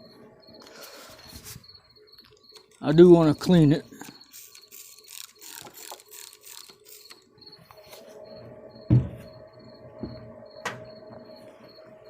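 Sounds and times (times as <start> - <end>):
cricket chirping: 0.0 - 12.0
thump: 8.9 - 9.3.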